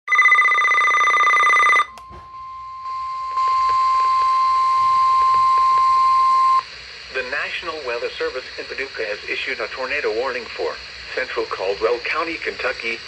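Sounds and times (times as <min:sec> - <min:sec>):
steady warning alarm tone: 0:00.1 - 0:06.6.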